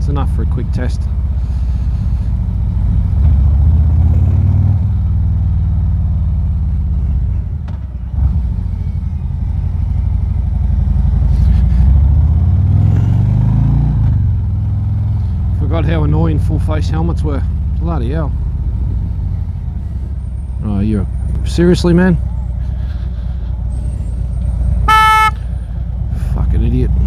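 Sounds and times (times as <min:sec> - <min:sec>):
motorcycle engine accelerating: 0:01.4 - 0:20.6.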